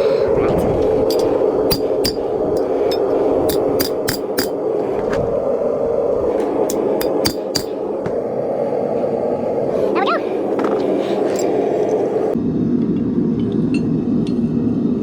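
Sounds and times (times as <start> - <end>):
gas burner rushing: 0.0 - 12.4
hammer ringing on metal: 1.1 - 4.6, 6.7 - 7.8.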